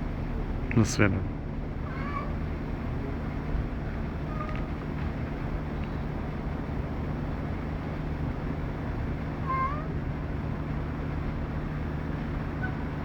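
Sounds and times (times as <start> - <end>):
low engine rumble: 0.0 - 13.0
cat meowing: 1.8 - 2.5, 4.2 - 4.8, 9.4 - 10.0.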